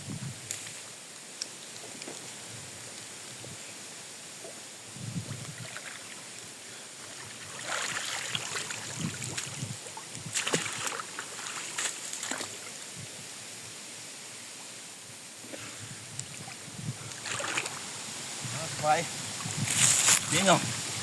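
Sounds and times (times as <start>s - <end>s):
hiss of moving water: 0.0s - 21.0s
water splashing and sloshing: 5.3s - 12.9s, 16.2s - 18.3s, 19.2s - 21.0s.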